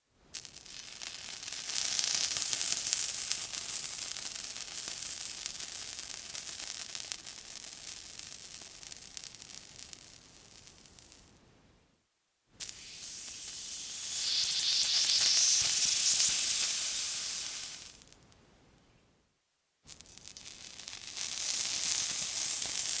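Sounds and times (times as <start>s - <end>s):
water sizzling: 12.6s - 18.1s, 20.4s - 23.0s.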